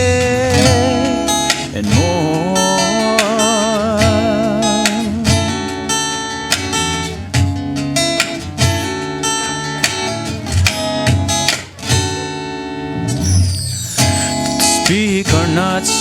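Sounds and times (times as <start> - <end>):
steady beat: 0.0 - 16.0
strummed acoustic guitar chords: 0.0 - 16.0.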